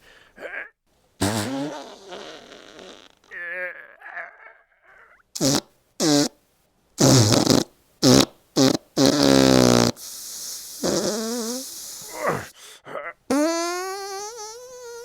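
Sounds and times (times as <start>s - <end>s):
low steady hiss: 0.0s - 4.0s, 5.2s - 13.3s
fart sounds: 1.2s - 3.4s, 5.4s - 6.4s, 7.0s - 12.5s, 13.3s - 15.0s.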